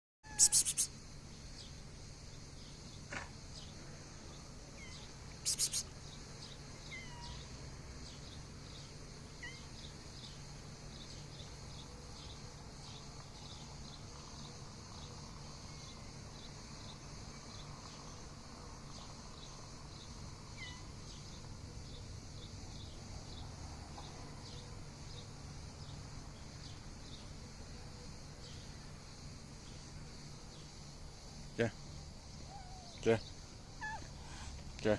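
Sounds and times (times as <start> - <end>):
cat calling: 0.2 - 0.9, 4.8 - 5.9, 6.9 - 7.4, 20.6 - 20.9, 32.5 - 33.0, 33.8 - 34.2
crickets chirping: 0.2 - 34.9.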